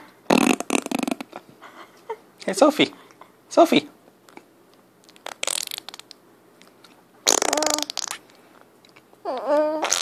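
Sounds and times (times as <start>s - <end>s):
buzzy fart blast: 0.3s - 1.2s, 7.2s - 8.2s.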